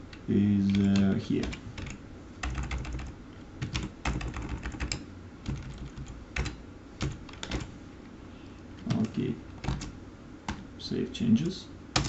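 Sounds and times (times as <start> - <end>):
computer keyboard typing: 0.7 - 7.7, 8.8 - 9.9.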